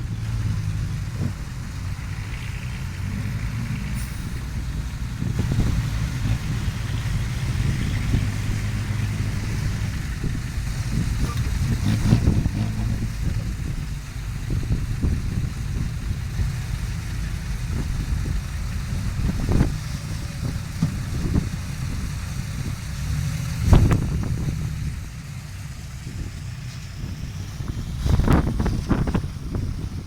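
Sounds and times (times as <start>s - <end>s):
excavator diesel engine running: 0.0s - 30.0s.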